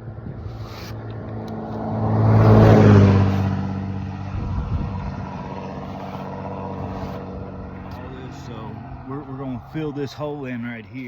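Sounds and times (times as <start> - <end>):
motor vehicle passing by: 0.0 - 11.0.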